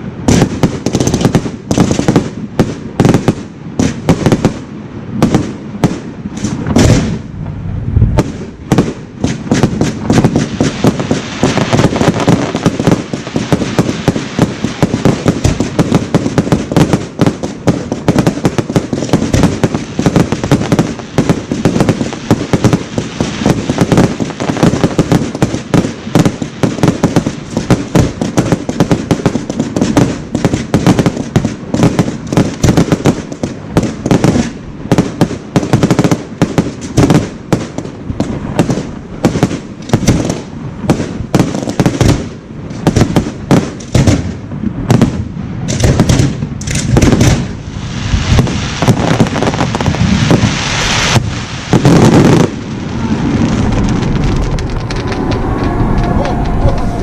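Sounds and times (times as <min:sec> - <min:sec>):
fireworks bursts and bangs: 0:00.0 - 0:07.3, 0:08.1 - 0:56.4.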